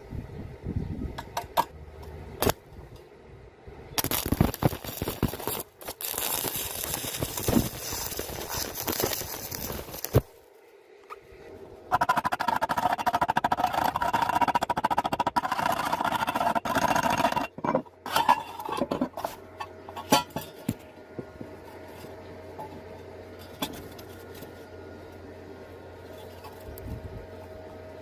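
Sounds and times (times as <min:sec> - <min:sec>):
welding arc crackling: 0:04.0 - 0:10.4.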